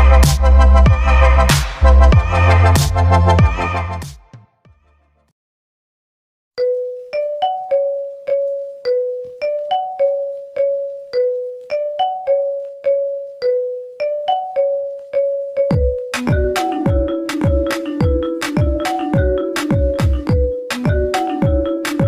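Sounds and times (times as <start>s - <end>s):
phone ringtone melody: 6.6s - 22.0s.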